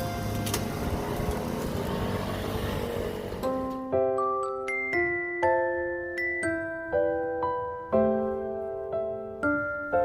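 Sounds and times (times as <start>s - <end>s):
background music: 0.0s - 10.0s
mallet instrument melody: 3.4s - 7.6s.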